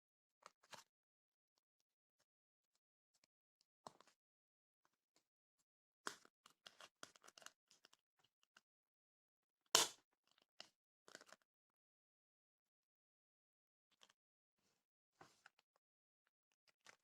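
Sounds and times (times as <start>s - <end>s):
small clicks and packaging rustles: 6.1s - 8.6s, 10.2s - 11.5s, 13.9s - 14.2s, 16.7s - 17.0s.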